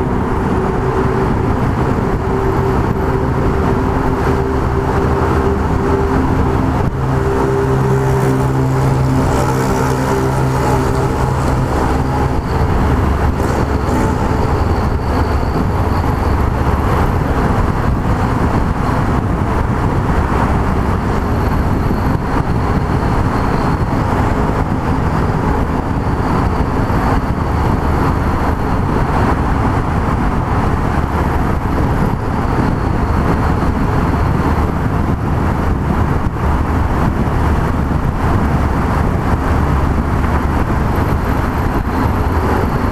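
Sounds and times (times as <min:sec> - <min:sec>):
motorcycle engine: 0:00.0 - 0:30.9
wind and road noise: 0:00.0 - 0:42.9.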